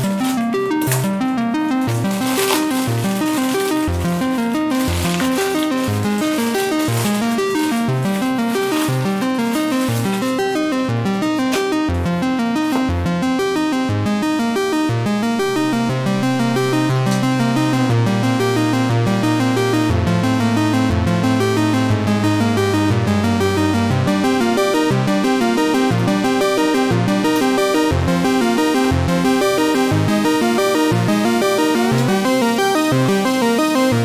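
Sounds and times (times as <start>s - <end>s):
upbeat electronic game music: 0.0s - 34.0s.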